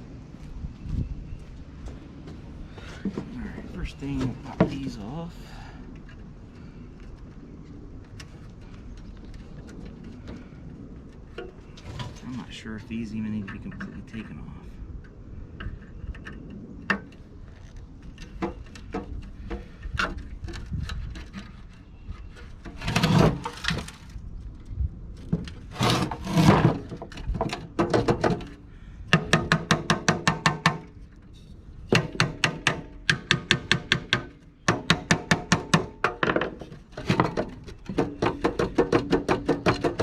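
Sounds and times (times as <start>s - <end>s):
metal scraping: 11.2s - 14.6s, 17.0s - 24.2s, 25.4s - 28.6s
tools clicking and knocking: 31.9s - 40.0s.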